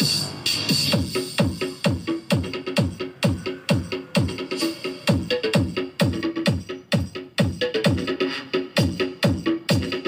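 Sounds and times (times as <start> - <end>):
electronic dance music: 0.0 - 10.0
deep kick drum: 0.9 - 4.4, 5.0 - 8.0.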